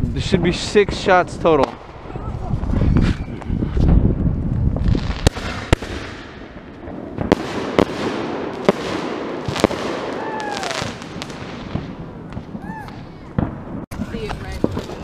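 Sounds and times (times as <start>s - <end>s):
fireworks bangs: 0.0s - 15.0s
falling firework whistle: 2.1s - 3.8s, 10.0s - 11.0s.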